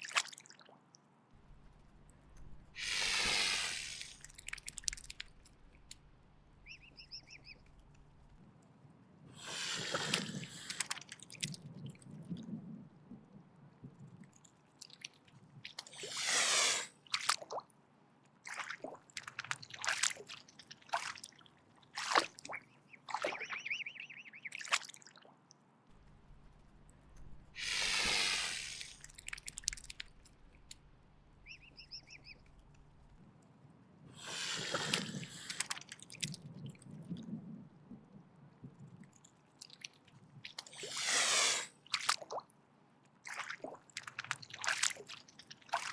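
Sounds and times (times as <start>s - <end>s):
swan hissing: 1.5s - 6.0s, 9.4s - 11.0s, 15.9s - 17.0s, 26.0s - 32.7s, 34.2s - 35.9s, 40.7s - 41.8s
short wet clicks and snaps: 3.9s - 8.4s, 10.1s - 11.6s, 14.2s - 15.9s, 17.1s - 17.7s, 18.4s - 23.5s, 28.6s - 33.2s, 34.9s - 36.8s, 39.0s - 40.7s, 41.9s - 42.5s, 43.2s - 45.9s.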